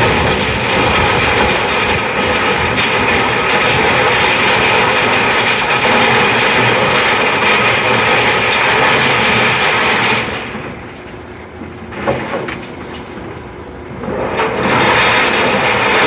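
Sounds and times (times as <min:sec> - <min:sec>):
excavator machine noise: 0:00.0 - 0:16.0.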